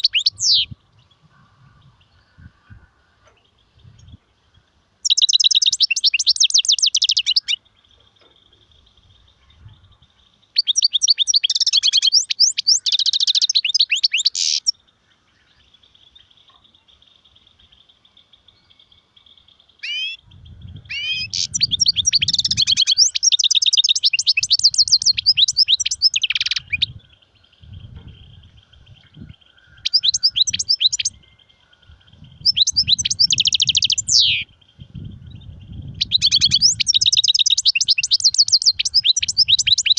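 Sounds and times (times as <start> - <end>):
goldfinch twittering trills: 5.0 - 7.6, 10.5 - 14.7, 19.8 - 27.1, 27.7 - 31.5, 32.2 - 39.9.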